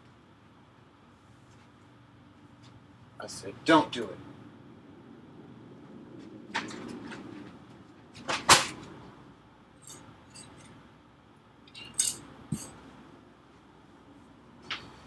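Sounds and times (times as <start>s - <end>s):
small tools clicking and clattering: 9.8s - 10.8s, 11.6s - 12.8s.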